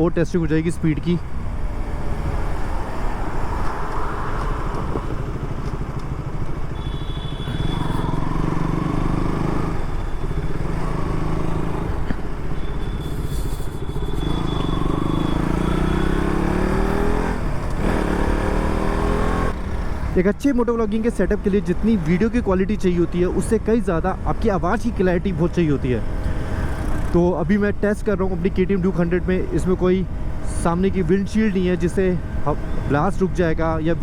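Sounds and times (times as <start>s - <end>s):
motorcycle engine accelerating: 4.7s - 20.0s.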